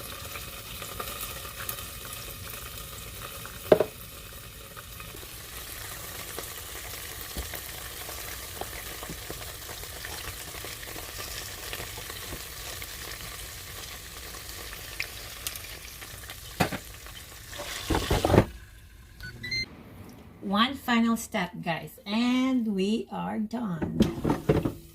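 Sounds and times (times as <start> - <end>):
ribs sizzling and crackling: 0.0 - 19.1.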